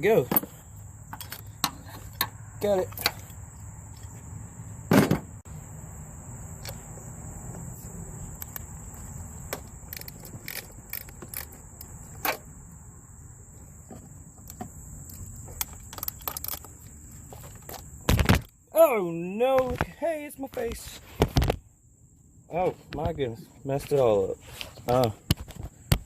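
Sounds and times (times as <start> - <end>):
clicks and knocks of handling parts: 0.2 - 4.2, 9.5 - 12.4, 13.9 - 18.5.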